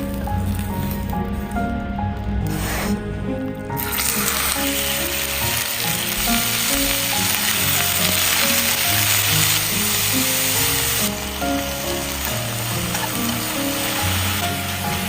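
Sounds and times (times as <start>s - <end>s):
stir-fry sizzling in oil: 3.8s - 15.0s.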